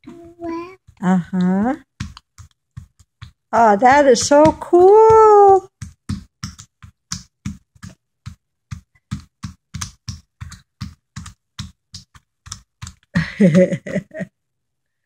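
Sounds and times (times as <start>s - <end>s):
child vocal sound: 0.0s - 0.8s
hands patting paint on paper: 0.1s - 14.2s.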